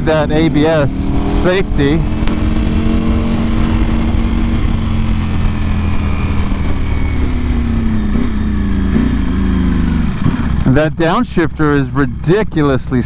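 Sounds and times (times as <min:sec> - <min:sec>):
motorcycle engine deep rumble: 0:00.0 - 0:13.0.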